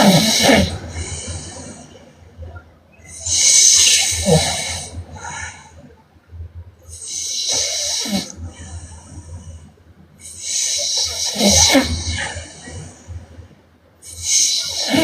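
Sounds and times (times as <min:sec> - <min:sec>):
woman snoring: 0:10.2 - 0:12.6, 0:14.1 - 0:15.0.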